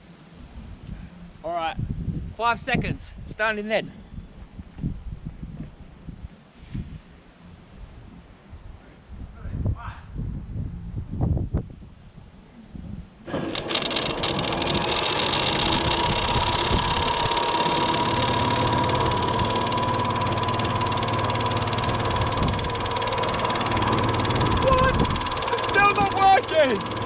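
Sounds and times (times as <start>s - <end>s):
washing machine motor whining: 13.3s - 27.0s.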